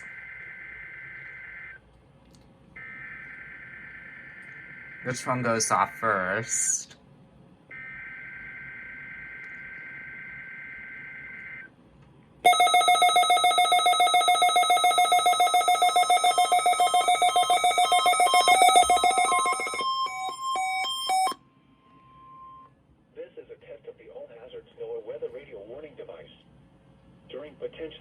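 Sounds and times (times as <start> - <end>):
weather radio alarms beeping: 12.5 - 22.7.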